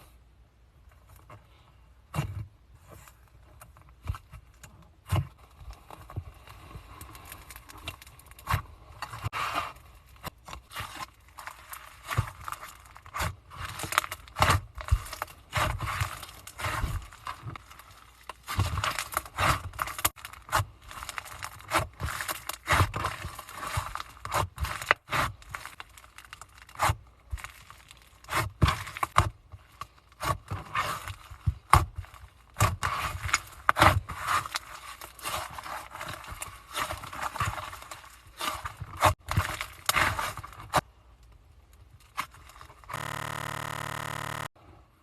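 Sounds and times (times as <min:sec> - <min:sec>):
steady buzzing tone: 0:42.9 - 0:44.6.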